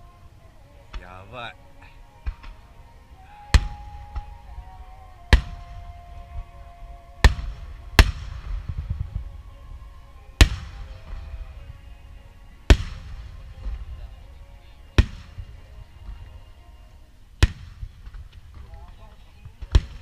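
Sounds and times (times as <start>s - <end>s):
music with long held notes: 0.0s - 20.0s
firework shells booming: 5.3s - 6.6s, 7.2s - 9.5s, 10.4s - 11.8s, 12.7s - 14.1s, 15.0s - 16.4s, 17.4s - 20.0s
firework crackle: 7.2s - 14.1s, 17.4s - 20.0s.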